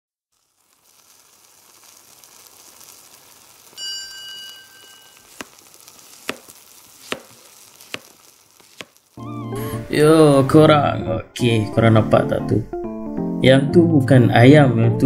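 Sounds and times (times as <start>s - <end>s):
food sizzling in hot oil: 0.3s - 10.6s
bell-like ding: 3.8s - 5.2s.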